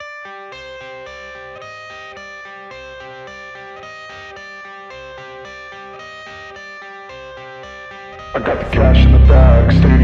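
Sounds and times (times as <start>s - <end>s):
plucked guitar riff: 8.1s - 10.0s.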